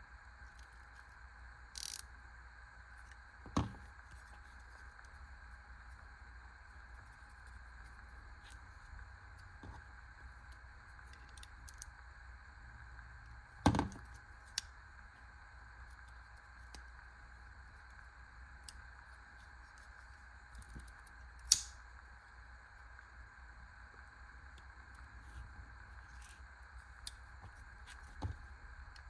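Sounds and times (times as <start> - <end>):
faint steady hum: 0.0 - 29.0
pocket knife clicks: 1.8 - 2.0, 21.4 - 21.8.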